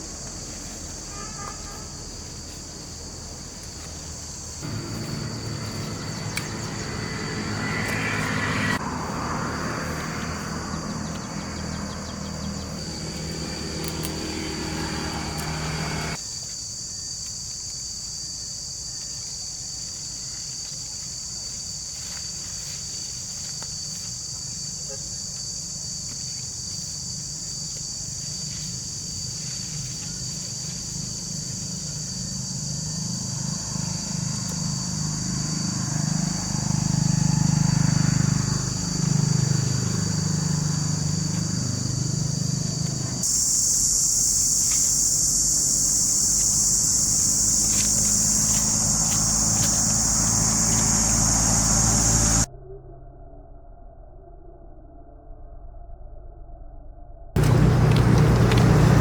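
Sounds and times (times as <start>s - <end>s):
engine humming: 0.0s - 16.2s, 28.1s - 52.5s, 57.4s - 59.0s
high-pitched insect chorus: 0.0s - 52.5s.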